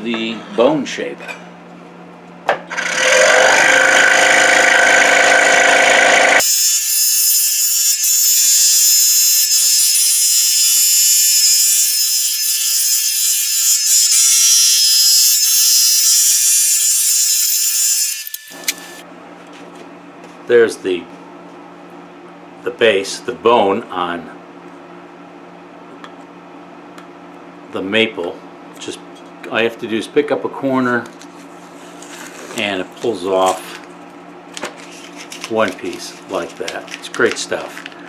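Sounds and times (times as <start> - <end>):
scroll saw cutting wood: 2.7 - 19.0.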